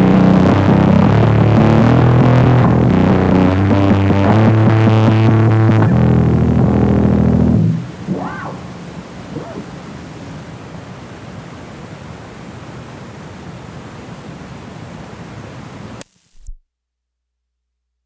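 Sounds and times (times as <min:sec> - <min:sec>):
faint gliding tones: 0:06.4 - 0:13.0
steady rushing hiss: 0:07.7 - 0:16.5
short click: 0:16.0 - 0:16.6.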